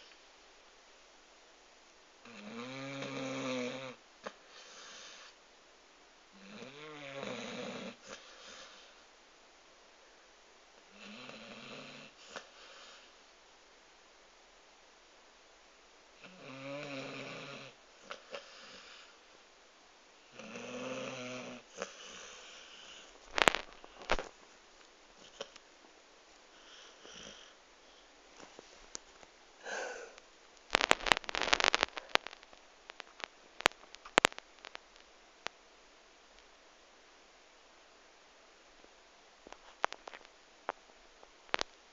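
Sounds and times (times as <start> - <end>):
dog snoring: 2.2 - 5.4, 6.3 - 9.0, 10.9 - 13.1, 16.2 - 19.2, 20.2 - 23.1, 26.5 - 27.6
breathy snuffle: 29.6 - 30.2.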